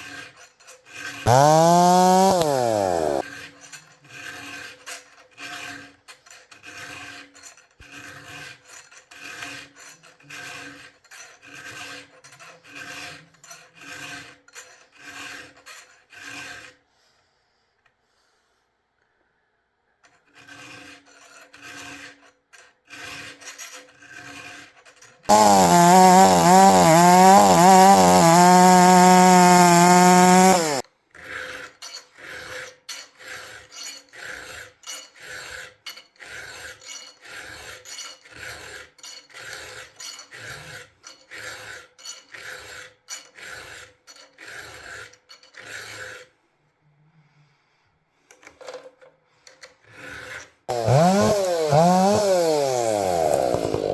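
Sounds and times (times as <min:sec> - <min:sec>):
file rasping on chainsaw chain: 0:00.0 - 0:16.9, 0:20.1 - 0:46.4, 0:49.8 - 0:53.9
chainsaw engine revving: 0:01.3 - 0:03.2, 0:25.3 - 0:30.8, 0:50.7 - 0:53.9.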